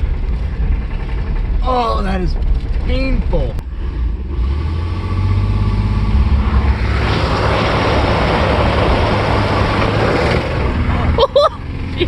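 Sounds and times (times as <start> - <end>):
knocking engine droning: 0.0 - 12.0
loud rushing noise: 3.6 - 11.2.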